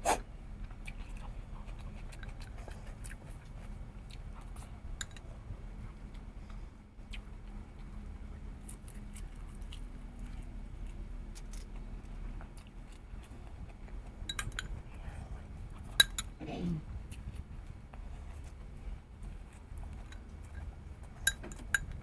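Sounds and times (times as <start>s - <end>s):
chewing sounds: 0.0s - 22.0s
tableware clinking: 5.0s - 5.2s, 21.3s - 22.0s.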